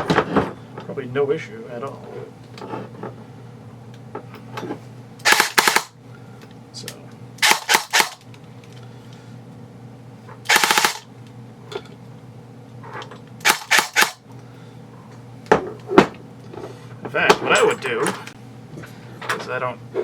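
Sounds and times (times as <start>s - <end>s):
airsoft gun firing bursts: 5.2s - 6.0s, 7.4s - 8.2s, 10.5s - 11.1s, 13.4s - 14.2s.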